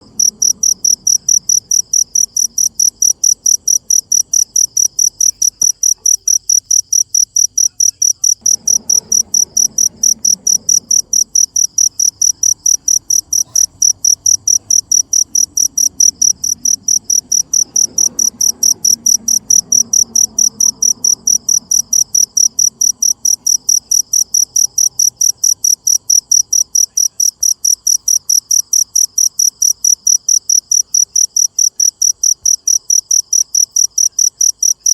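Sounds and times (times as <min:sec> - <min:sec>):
cricket chirping: 0:00.0 - 0:34.9.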